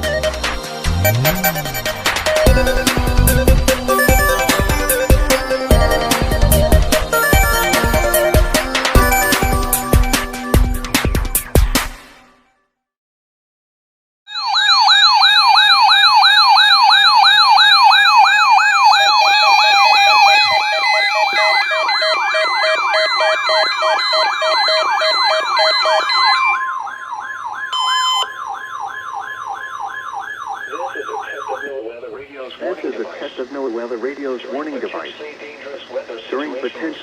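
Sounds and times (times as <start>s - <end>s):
steady beeps: 0.0s - 11.4s, 19.0s - 26.7s, 27.7s - 29.8s
electronic siren warbling: 0.0s - 11.7s, 14.3s - 32.2s
steady warning tone: 0.0s - 11.7s, 14.3s - 37.0s.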